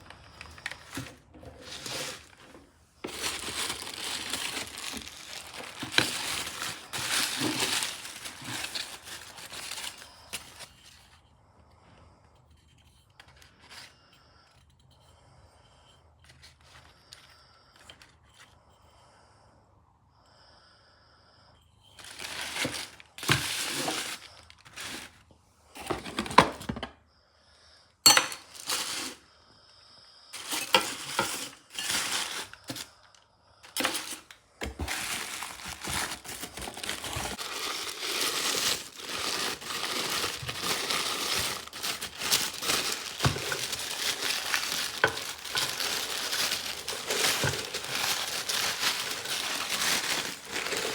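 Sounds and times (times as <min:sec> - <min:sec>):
plastic and cardboard crinkling: 0:00.0 - 0:11.2, 0:12.9 - 0:14.0, 0:22.0 - 0:26.9, 0:28.1 - 0:29.2, 0:30.4 - 0:50.9.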